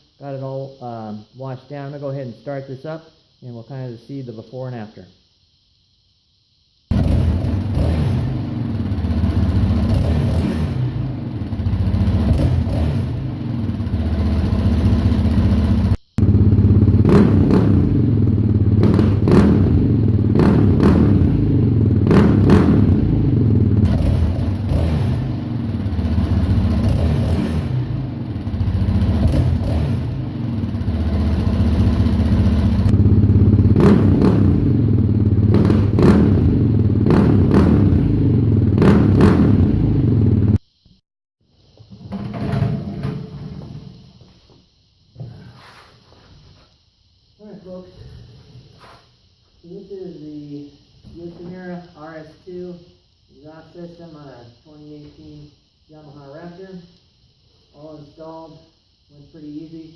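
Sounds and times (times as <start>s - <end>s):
engine revving: 6.9s - 40.6s.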